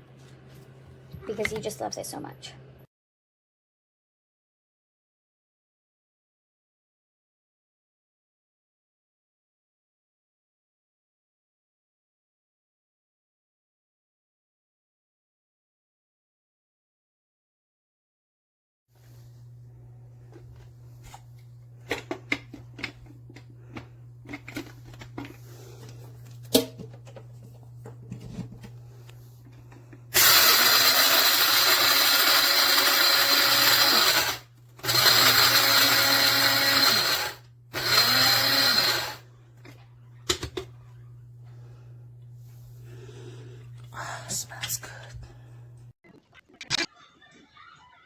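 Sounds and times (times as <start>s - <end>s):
coffee grinder whirring: 19.0s - 43.9s
steady low hum: 39.2s - 45.9s.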